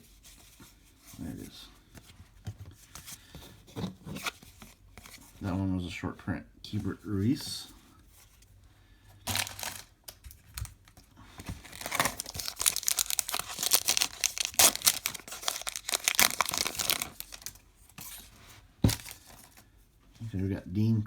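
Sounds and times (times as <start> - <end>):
foil wrapper tearing and crinkling: 9.3 - 10.0, 11.5 - 17.6.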